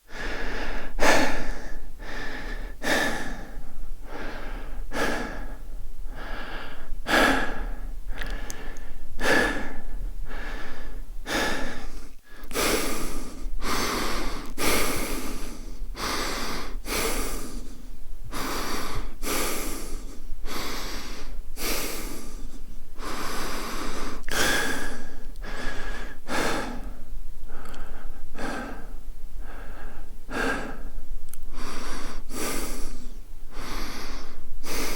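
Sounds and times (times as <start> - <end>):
man breathing quickly: 0.0 - 34.9.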